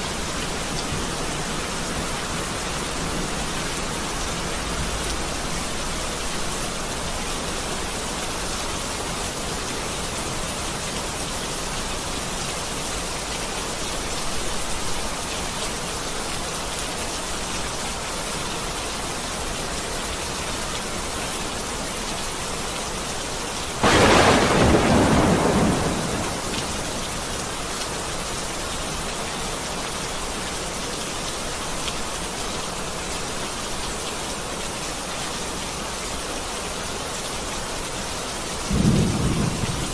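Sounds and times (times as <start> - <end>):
steady rain falling: 0.0 - 39.9
thunderclap rumbling: 23.8 - 27.6, 38.7 - 39.9.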